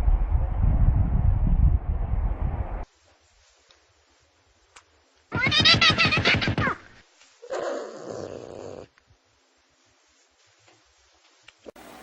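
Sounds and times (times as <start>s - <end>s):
faint click: 3.6s - 3.8s, 4.7s - 5.3s.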